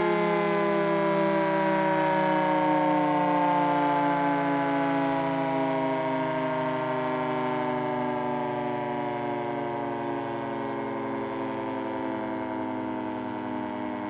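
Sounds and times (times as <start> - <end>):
civil-defense siren winding down: 0.0 - 14.0.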